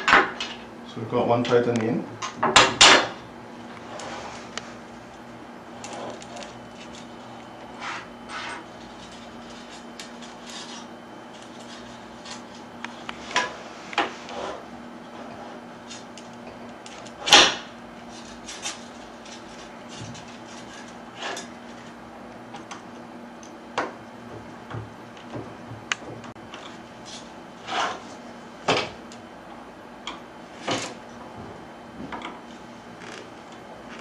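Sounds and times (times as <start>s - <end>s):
steady low hum: 0.0s - 34.0s
curtain track parts clicking: 5.8s - 7.1s.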